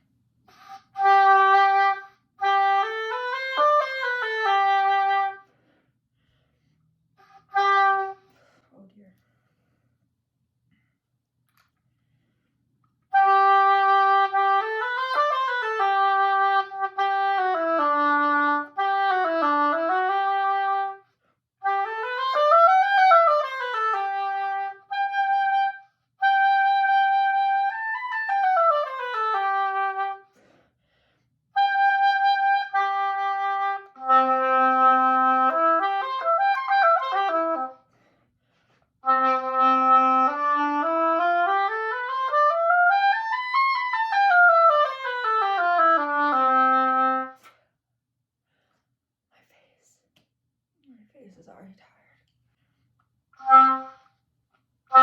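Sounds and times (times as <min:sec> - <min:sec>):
solo oboe playing scales: 0:00.5 - 0:05.5, 0:07.2 - 0:08.3, 0:13.1 - 0:30.4, 0:31.6 - 0:37.9, 0:39.0 - 0:47.5, 0:53.4 - 0:54.1.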